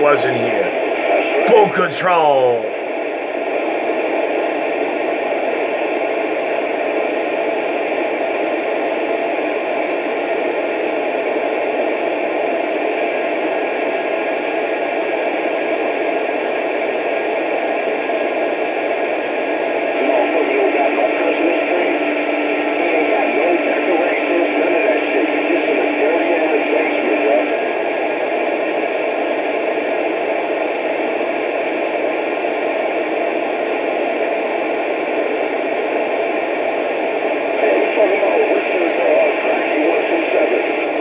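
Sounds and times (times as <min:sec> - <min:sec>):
faint garbled radio sounds: 0:00.0 - 0:00.8.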